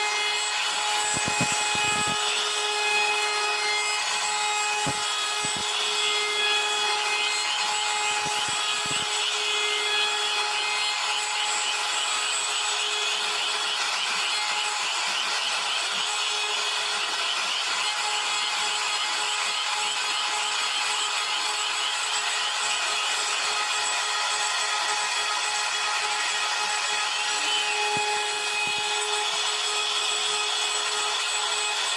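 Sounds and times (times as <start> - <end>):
router spindle cutting wood: 0.0 - 31.9.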